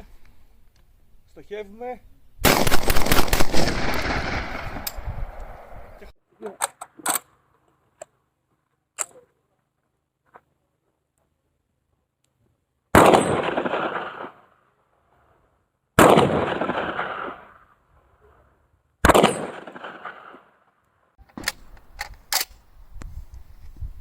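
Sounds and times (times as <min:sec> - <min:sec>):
shotgun blasts with echo: 0:02.4 - 0:06.0, 0:13.0 - 0:14.5, 0:16.0 - 0:17.6, 0:19.0 - 0:20.5
sharp clicks: 0:21.2 - 0:23.4.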